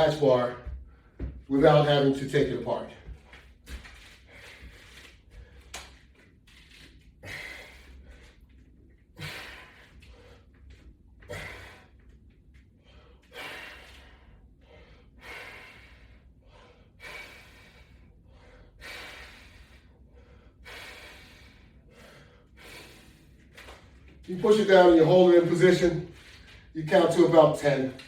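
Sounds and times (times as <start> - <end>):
man breathing hard: 3.0 - 6.1, 7.1 - 24.2.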